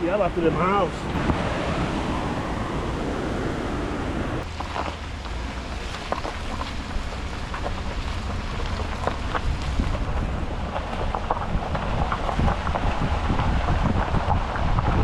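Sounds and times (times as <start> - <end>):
wind buffeting microphone: 0.0 - 4.6, 5.6 - 15.0
crackles and ticks: 4.4 - 15.0.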